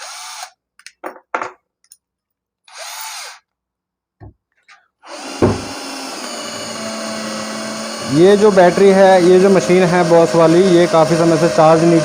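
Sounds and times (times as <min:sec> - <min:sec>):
cordless drill spinning: 0:00.0 - 0:00.6, 0:02.7 - 0:03.5, 0:04.6 - 0:12.0
dull knock: 0:05.4 - 0:05.8.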